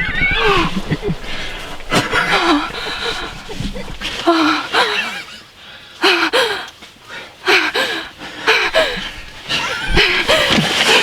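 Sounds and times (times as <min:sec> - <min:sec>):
woman gasping and whimpering: 0:00.1 - 0:05.2, 0:07.5 - 0:10.5.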